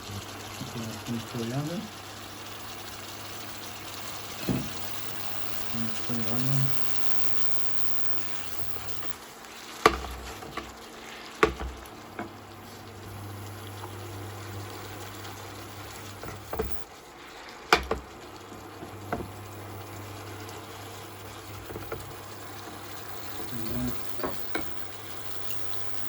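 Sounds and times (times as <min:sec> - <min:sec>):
food sizzling in a pan: 0:00.0 - 0:26.0
utensil knocking against pan: 0:09.8 - 0:10.7, 0:11.4 - 0:12.3, 0:17.7 - 0:18.1.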